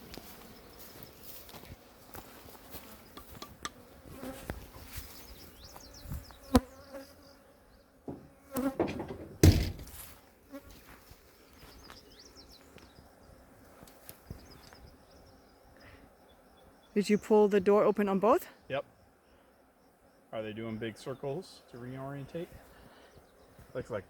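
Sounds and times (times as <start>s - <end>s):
honeybees buzzing: 0.0s - 24.0s
sharp knocks: 8.1s - 10.0s.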